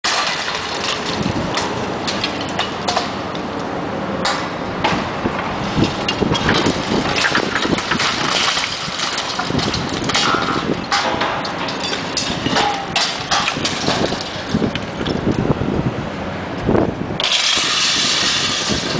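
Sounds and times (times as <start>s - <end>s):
bricks and debris clattering: 0.0s - 3.1s, 5.8s - 15.2s, 17.2s - 18.9s.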